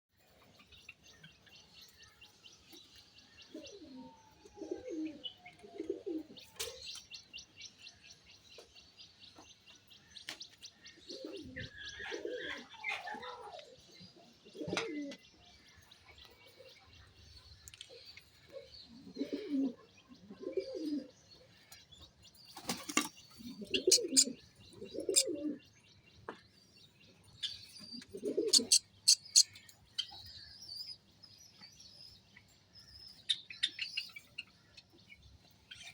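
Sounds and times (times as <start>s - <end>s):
sparrows chirping: 0.2s - 35.9s
pigeons cooing: 3.5s - 6.5s, 11.1s - 13.5s, 14.4s - 15.2s, 18.5s - 21.2s, 22.9s - 25.6s, 28.0s - 29.5s.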